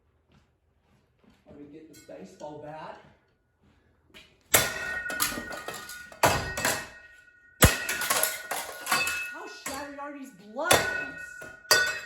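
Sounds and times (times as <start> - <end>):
bat hitting fan blades: 4.5 - 9.9, 10.7 - 12.0
plastic blades clattering: 4.6 - 7.0, 7.6 - 10.0.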